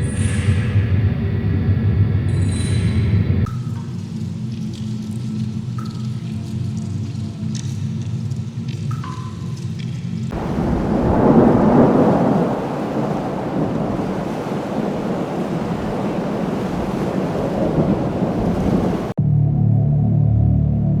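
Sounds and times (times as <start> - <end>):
dark rumbling ambience: 0.0 - 9.0, 9.6 - 21.0.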